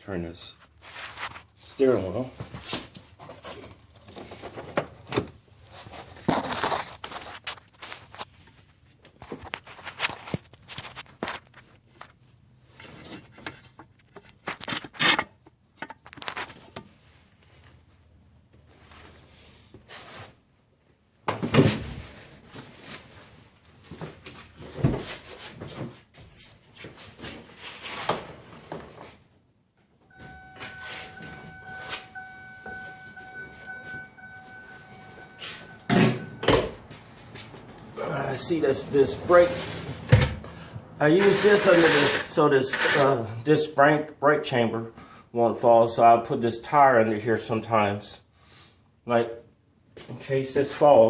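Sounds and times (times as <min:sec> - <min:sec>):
steady electronic tone: 0:30.1 - 0:37.0.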